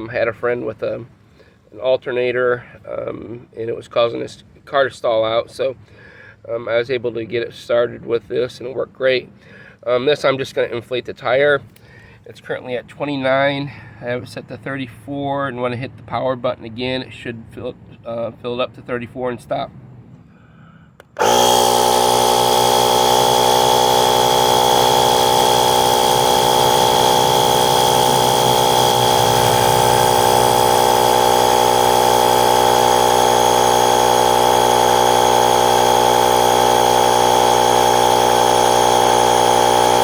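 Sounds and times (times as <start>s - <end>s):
air compressor buzzing and whining: 21.0s - 40.0s.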